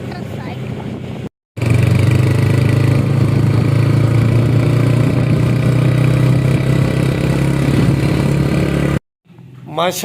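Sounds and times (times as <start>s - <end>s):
motorcycle engine running: 1.6s - 9.0s.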